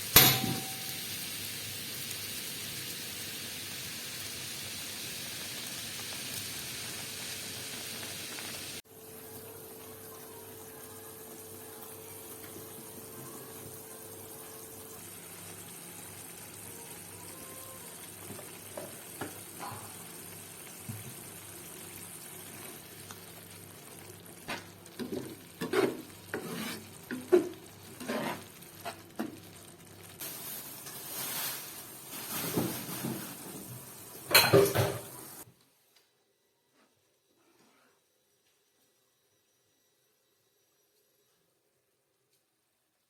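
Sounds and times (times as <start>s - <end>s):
food sizzling in a frying pan: 0.0s - 35.5s
spatula scraping a pan: 25.0s - 29.1s.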